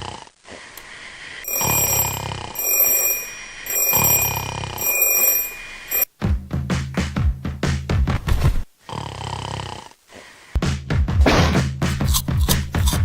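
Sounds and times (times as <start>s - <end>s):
high electronic ringing tone: 1.4s - 6.1s.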